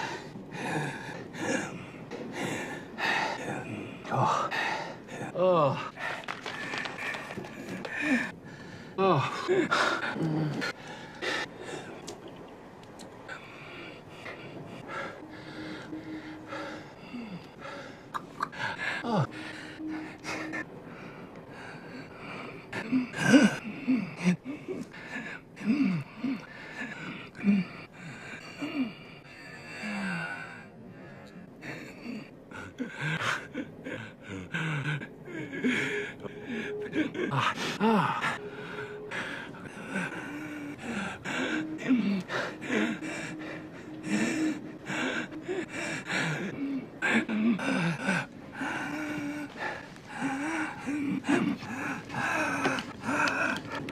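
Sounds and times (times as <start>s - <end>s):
man gasping and wheezing: 13.3s - 20.7s, 32.7s - 53.9s.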